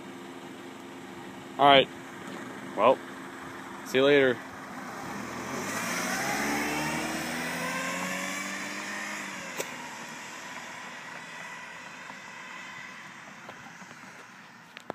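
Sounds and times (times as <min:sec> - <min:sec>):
car driving off: 0:00.6 - 0:14.9
single click: 0:09.6 - 0:09.8.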